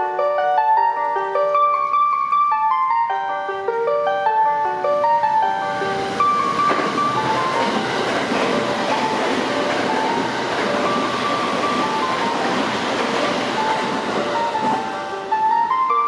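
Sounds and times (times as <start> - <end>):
piano music: 0.0 - 16.0
train wheel and rail noise: 4.4 - 16.0.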